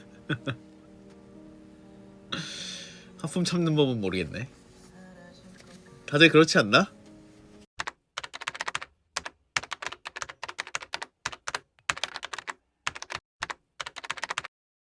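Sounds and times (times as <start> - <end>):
computer keyboard typing: 7.8 - 14.5.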